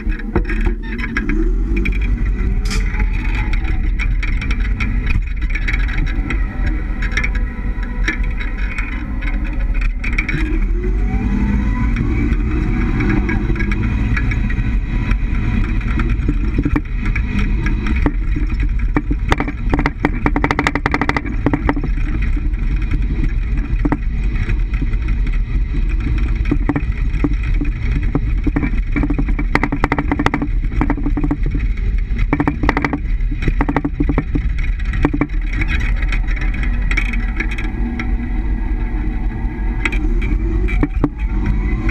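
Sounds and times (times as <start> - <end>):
van road noise: 0.0 - 41.9
sharp suspension knocks: 11.8 - 37.7.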